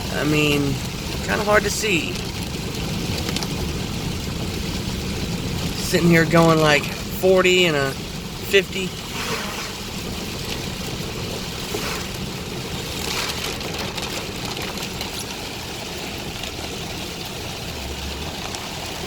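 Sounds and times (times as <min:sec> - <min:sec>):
rain on a car: 0:00.0 - 0:19.0
tyres hissing on wet road: 0:00.0 - 0:19.0.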